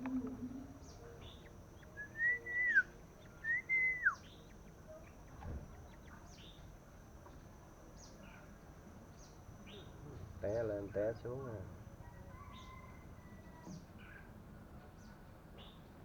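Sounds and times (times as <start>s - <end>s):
faint steady high tone: 0.0s - 5.4s
faint high chirps: 0.0s - 6.7s
bird whistled notes: 1.8s - 4.4s.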